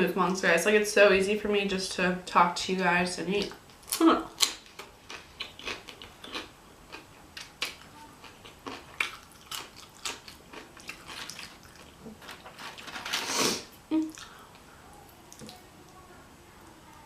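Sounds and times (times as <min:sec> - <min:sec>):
chewing food: 0:03.8 - 0:13.0
breathy noise: 0:13.1 - 0:15.2.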